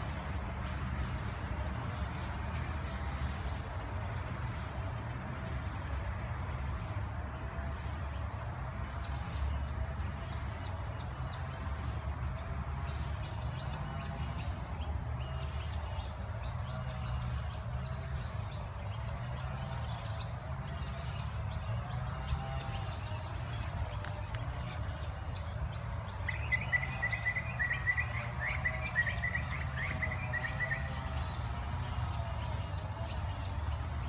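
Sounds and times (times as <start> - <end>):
birds chirping: 13.3 - 34.0.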